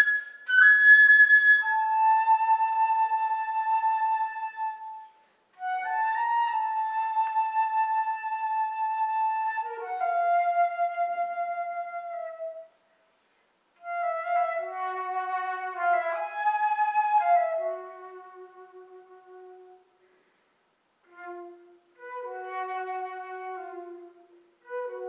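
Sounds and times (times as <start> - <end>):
solo flute playing: 0.0 - 13.0, 13.8 - 20.2, 21.0 - 25.0.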